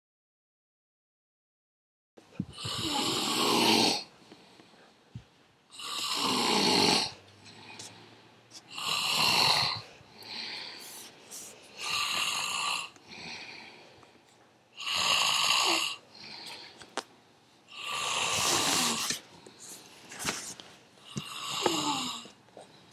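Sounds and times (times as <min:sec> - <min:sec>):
man snoring loudly: 0:02.5 - 0:04.1, 0:05.7 - 0:07.8, 0:08.7 - 0:10.7, 0:11.8 - 0:13.6, 0:14.8 - 0:16.4, 0:17.7 - 0:19.1, 0:21.1 - 0:22.3
soft breathing: 0:04.0 - 0:05.6, 0:07.1 - 0:14.6, 0:15.6 - 0:22.9.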